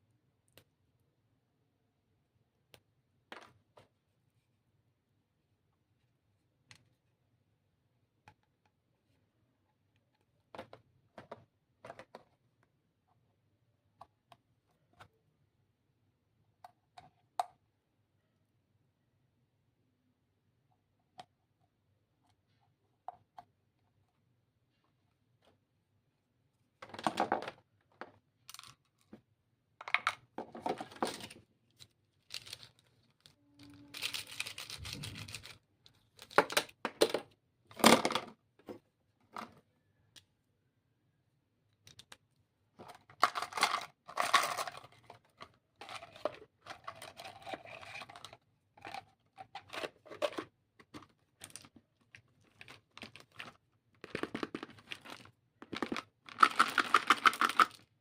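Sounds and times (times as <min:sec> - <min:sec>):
packaging tearing and crinkling: 0:33.8 - 0:35.6.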